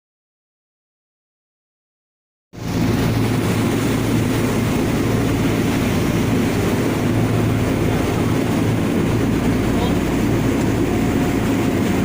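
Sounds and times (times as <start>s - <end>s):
motorboat engine humming: 2.6s - 12.0s
rush of wind and water: 2.6s - 12.0s.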